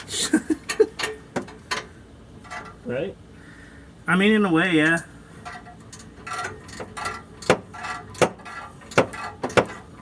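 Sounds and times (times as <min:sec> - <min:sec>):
metallic knocks on exhaust: 0:05.4 - 0:09.9.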